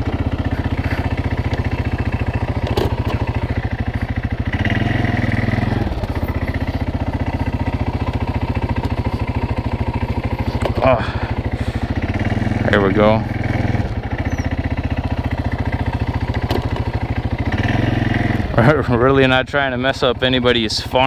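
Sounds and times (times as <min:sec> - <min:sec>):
atv engine running: 0:00.0 - 0:21.0.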